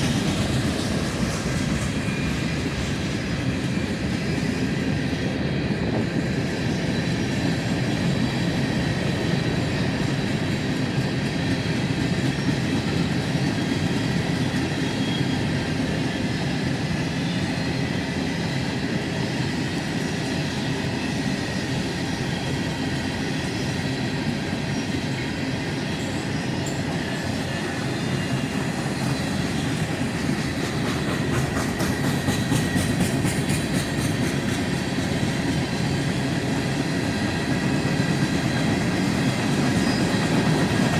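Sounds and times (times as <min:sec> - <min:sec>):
train wheels clicking over rail joints: 0:00.0 - 0:04.5, 0:21.2 - 0:40.9.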